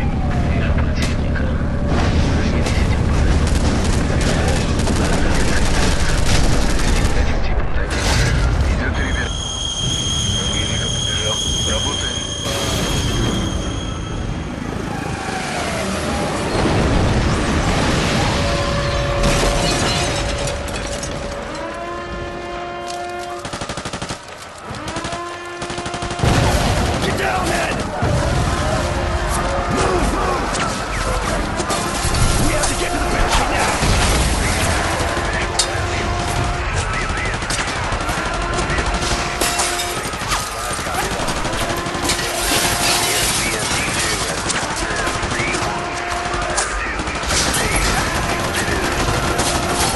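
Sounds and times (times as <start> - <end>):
crackling gunfire: 1.9 - 8.4, 23.4 - 49.9
machine-gun burst: 3.2 - 7.4, 23.4 - 28.9, 31.8 - 49.9.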